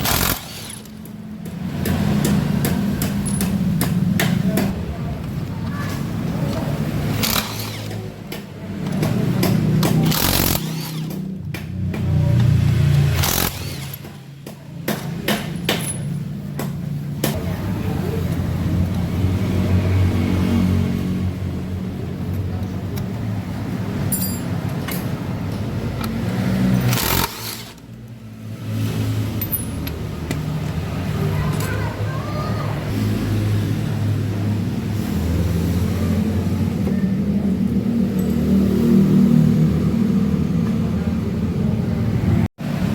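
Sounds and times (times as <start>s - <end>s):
engine running: 0.0s - 31.8s
sharp metal knocks and taps: 0.9s - 4.8s, 14.0s - 17.4s.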